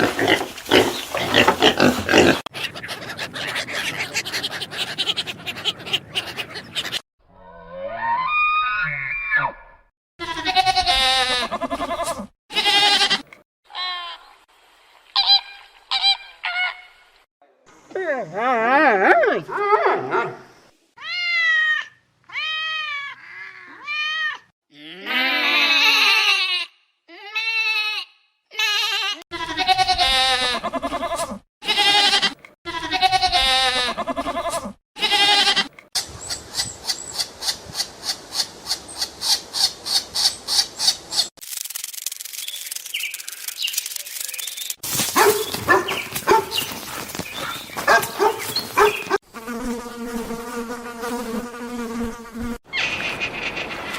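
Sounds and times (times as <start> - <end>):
quavering animal calls: 0.0 - 7.0
goat bleating: 10.2 - 13.9, 25.1 - 35.9.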